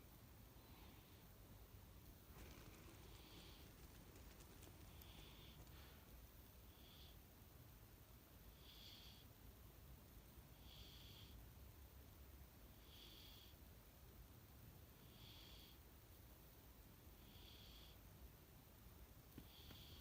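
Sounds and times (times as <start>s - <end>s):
cat snoring softly: 2.3s - 6.0s, 6.6s - 7.3s, 8.4s - 9.4s, 10.5s - 11.5s, 12.6s - 13.6s, 14.9s - 15.9s, 17.1s - 18.1s, 19.4s - 20.0s.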